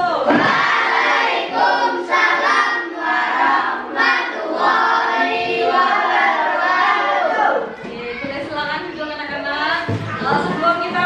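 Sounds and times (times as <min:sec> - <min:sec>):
children singing in unison: 0:00.1 - 0:08.6.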